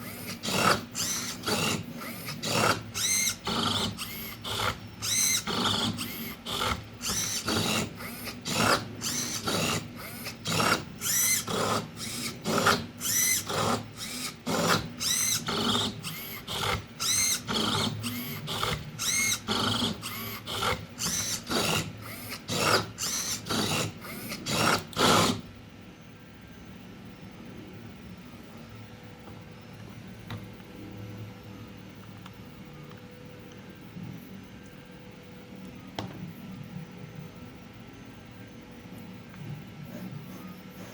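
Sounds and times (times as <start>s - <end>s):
robot grippers whirring: 0.0s - 25.4s
faint steady hum: 0.0s - 40.9s.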